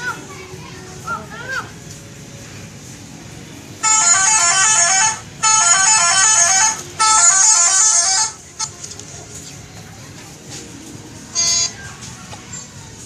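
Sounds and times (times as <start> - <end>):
bus musical horn tune: 3.8 - 8.4, 11.4 - 11.7.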